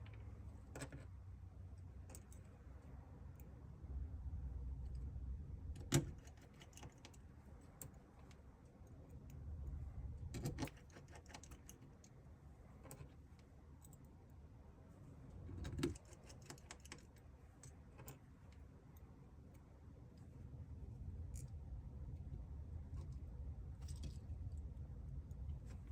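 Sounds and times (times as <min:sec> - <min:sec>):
small clicks and taps of tools: 0:02.0 - 0:02.5.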